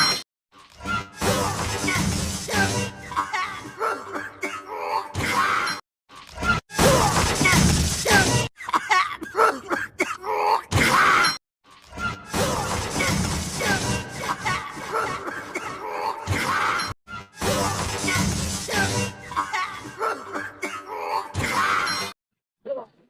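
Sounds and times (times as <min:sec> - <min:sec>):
crashing and shattering: 0:06.8 - 0:08.5, 0:12.3 - 0:15.3.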